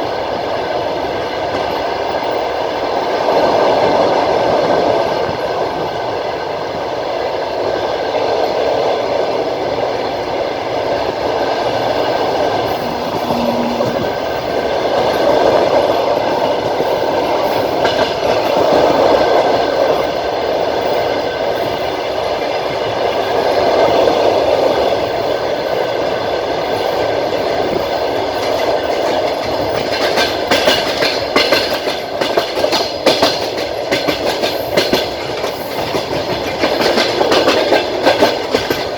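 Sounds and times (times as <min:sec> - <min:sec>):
wheels rumbling on rails: 0:10.8 - 0:38.9
wheels clacking over rail joints: 0:26.7 - 0:38.9.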